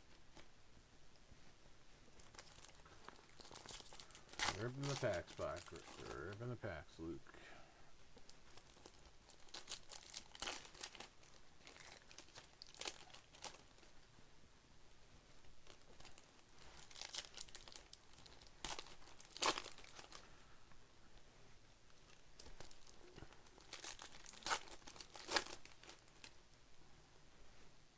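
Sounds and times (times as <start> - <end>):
card wrappers tearing and crinkling: 2.2 - 7.1, 8.5 - 13.9, 15.6 - 20.2, 23.6 - 26.4.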